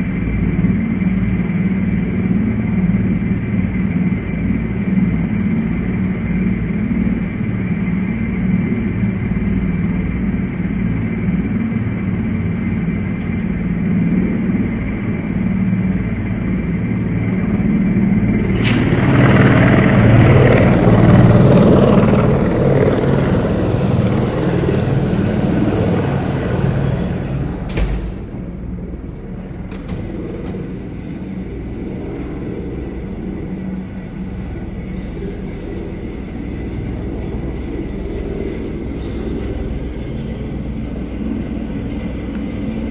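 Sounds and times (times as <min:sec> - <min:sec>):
helicopter drone and whine: 0:00.0 - 0:42.9
loud rushing noise: 0:18.1 - 0:29.2.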